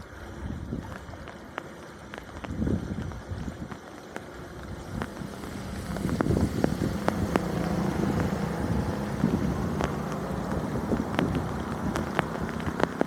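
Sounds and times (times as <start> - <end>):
engine running steadily: 0.0 - 13.0.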